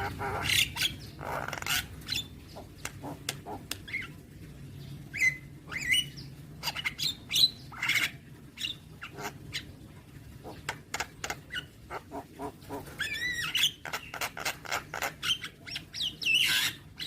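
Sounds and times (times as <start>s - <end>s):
bird singing squawks and whistles: 13.0s - 17.0s.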